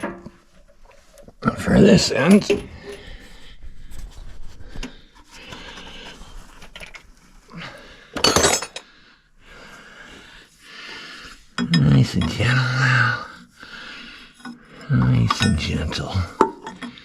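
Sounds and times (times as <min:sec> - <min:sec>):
metal tools clinking and scraping: 0:08.2 - 0:08.9, 0:11.5 - 0:12.6, 0:14.4 - 0:17.0.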